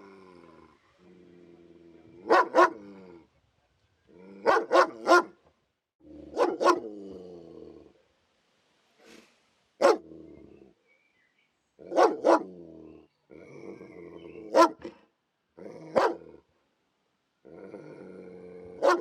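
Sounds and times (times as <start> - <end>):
dog growling low: 0.0 - 3.3, 6.0 - 8.0, 10.0 - 10.8, 12.4 - 14.6, 15.6 - 16.4, 17.4 - 19.0
dog barking: 2.2 - 2.8, 4.4 - 5.4, 6.3 - 6.9, 9.8 - 10.0, 11.8 - 12.5, 14.5 - 15.0, 15.9 - 16.3, 18.8 - 19.0.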